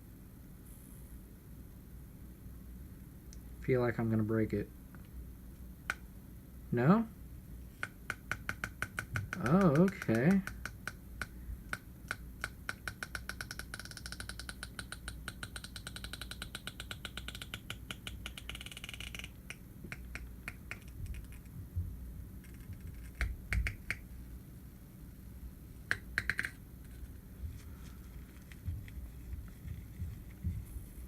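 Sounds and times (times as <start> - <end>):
rapid regular clicking: 7.8 - 21.6, 22.4 - 24.1, 25.8 - 30.8
scattered clicks and taps: 7.8 - 24.0, 25.9 - 30.8.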